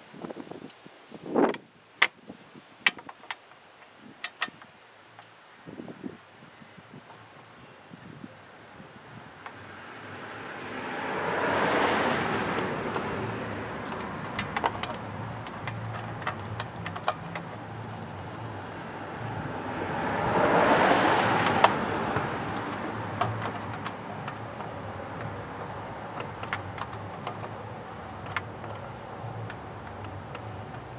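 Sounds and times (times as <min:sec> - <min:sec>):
metallic clicks of hand tools: 0:04.2 - 0:04.7, 0:12.4 - 0:30.9
vehicles passing by: 0:05.1 - 0:30.9.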